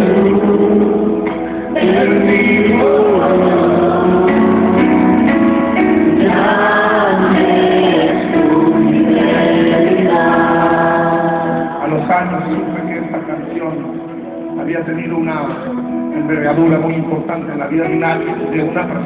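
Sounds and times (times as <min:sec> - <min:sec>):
choir-like voices singing: 0:00.0 - 0:13.4
instrumental accompaniment: 0:00.0 - 0:19.0.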